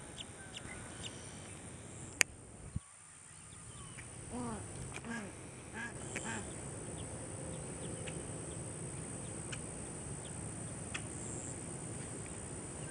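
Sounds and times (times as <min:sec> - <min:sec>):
bird chirps: 0:00.0 - 0:01.7, 0:02.7 - 0:04.2
wetland background hum: 0:00.0 - 0:12.9.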